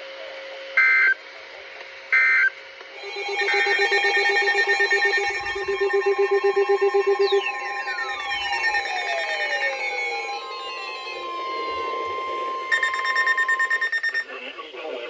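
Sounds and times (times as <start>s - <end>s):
fast pulsing tone: 3.0s - 14.3s
loud steady alert tone: 3.0s - 14.3s
emergency alert data tones: 3.0s - 14.4s.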